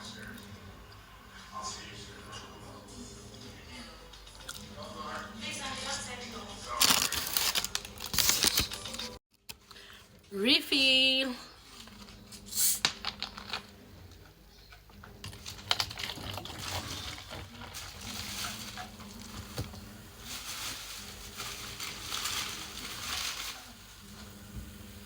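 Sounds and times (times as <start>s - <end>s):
food handling clicks and crinkles: 6.6s - 10.3s, 11.6s - 24.4s.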